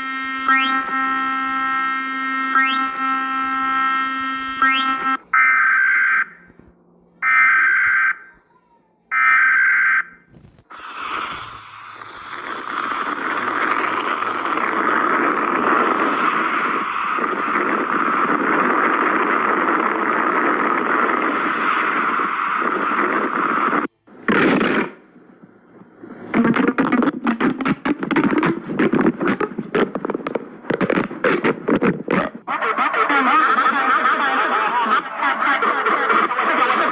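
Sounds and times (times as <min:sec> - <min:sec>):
harsh buzzing alarm tone: 0:00.0 - 0:06.6, 0:07.2 - 0:08.4, 0:09.1 - 0:23.9.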